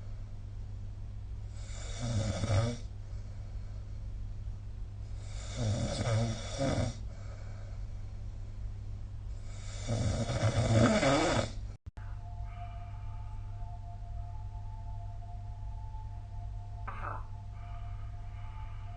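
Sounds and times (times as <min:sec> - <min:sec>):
person snoring: 0:09.4 - 0:11.6
faint two-note hum: 0:12.0 - 0:18.9.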